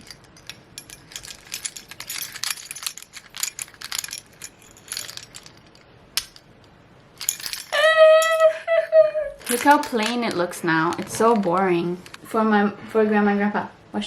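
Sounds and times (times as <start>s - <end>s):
keys and keychains jingling: 0.0s - 6.4s, 7.2s - 8.4s, 9.4s - 12.2s.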